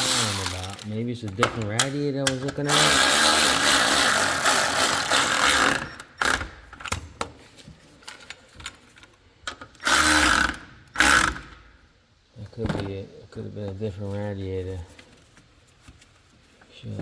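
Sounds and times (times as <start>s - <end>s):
ratchet wrench cranking: 0.0s - 0.9s, 2.7s - 6.5s, 9.8s - 11.6s.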